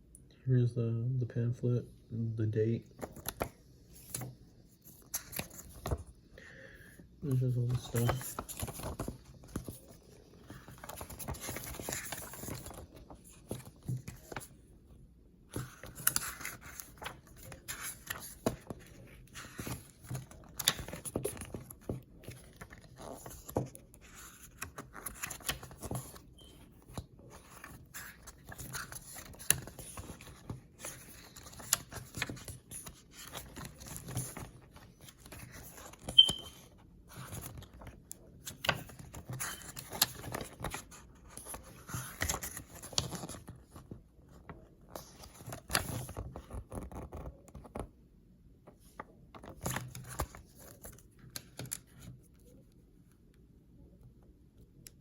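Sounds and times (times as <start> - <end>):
paper pages rustling: 2.9 - 6.2, 7.4 - 14.6, 15.5 - 47.9, 48.8 - 52.6.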